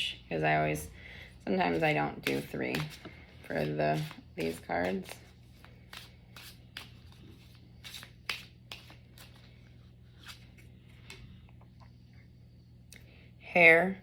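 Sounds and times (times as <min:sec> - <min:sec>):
faint low hum: 0:00.0 - 0:14.0
cards shuffling and swishing: 0:01.7 - 0:10.7.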